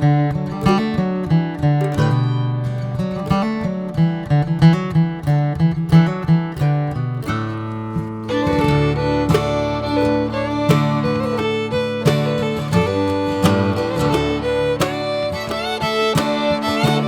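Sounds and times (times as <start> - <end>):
acoustic guitar strumming: 0.0 - 17.0
fiddle playing sliding melody: 8.2 - 17.0.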